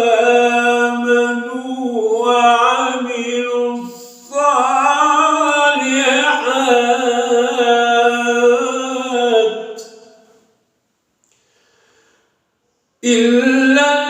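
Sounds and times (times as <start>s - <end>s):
man reciting melodically: 0.0s - 10.1s, 13.0s - 14.0s.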